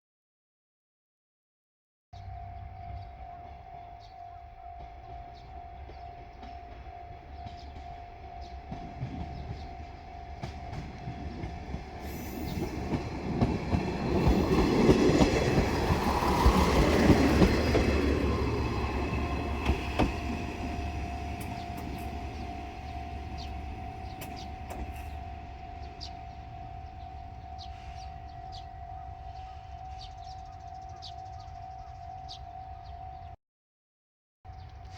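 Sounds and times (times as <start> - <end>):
diesel railcar engine and wheels: 2.2 - 33.4, 34.5 - 34.9
level crossing warning bell: 2.2 - 33.4
wheels clacking over rail joints: 4.6 - 28.9.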